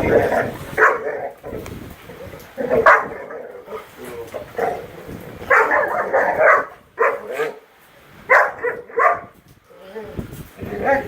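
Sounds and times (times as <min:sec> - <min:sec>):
puppies barking and yipping: 0:00.0 - 0:01.6, 0:02.2 - 0:07.6, 0:08.3 - 0:09.3.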